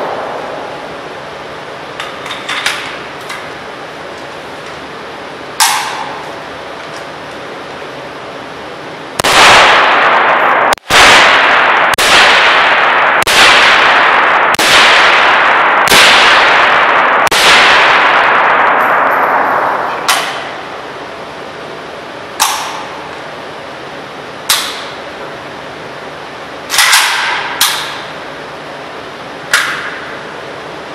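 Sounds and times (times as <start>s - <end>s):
suppressed rifle shots: 9.2s - 20.6s, 26.7s - 28.1s.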